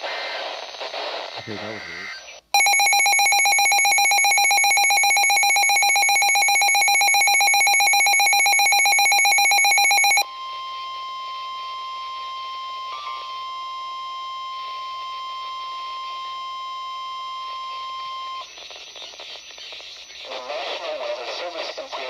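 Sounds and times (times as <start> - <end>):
harsh pulsing alarm tone: 2.6 - 10.2.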